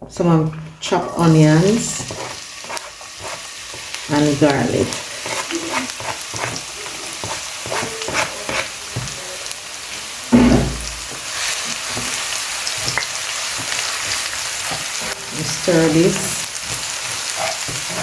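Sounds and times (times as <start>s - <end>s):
onions sizzling in oil: 0.2s - 18.0s
utensil scraping a pot: 1.7s - 3.9s, 4.8s - 8.8s, 16.6s - 18.0s
loud knock: 10.3s - 11.1s.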